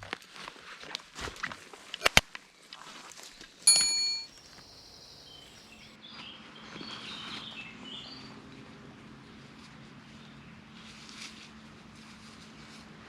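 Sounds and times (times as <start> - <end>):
sharp ringing metallic strike: 3.7 - 4.4
birds calling: 4.3 - 5.9.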